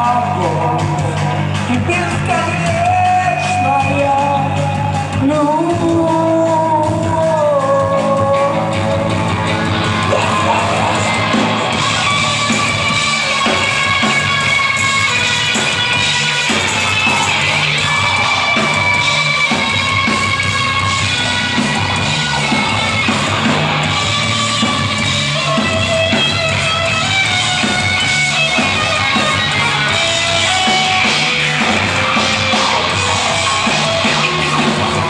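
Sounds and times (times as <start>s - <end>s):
person singing and shouting: 0.0s - 9.1s, 10.0s - 12.6s
live rock band playing: 0.0s - 35.0s.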